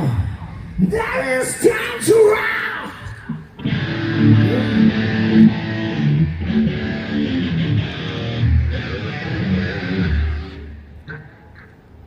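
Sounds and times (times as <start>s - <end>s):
electric guitar: 0.0s - 12.0s
bass guitar: 2.9s - 12.0s.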